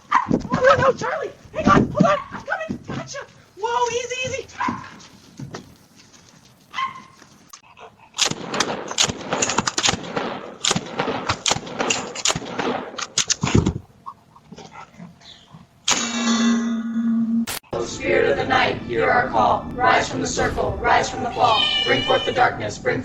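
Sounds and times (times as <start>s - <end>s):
dog barking: 0.0s - 0.8s, 2.0s - 3.2s, 4.5s - 5.0s, 6.7s - 7.2s
dog's high call: 6.7s - 7.2s.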